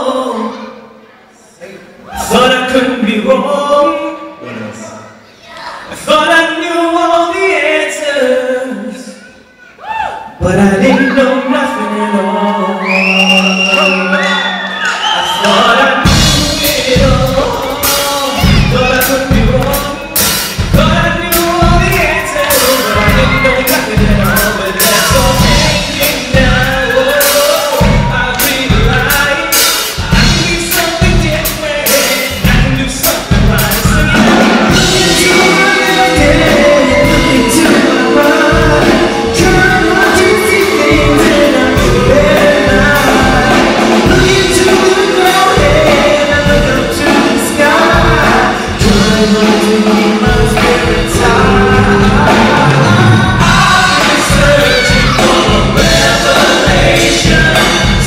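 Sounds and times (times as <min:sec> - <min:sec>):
person singing: 0:10.3 - 0:58.0
music with steady drum beat: 0:16.0 - 0:58.0.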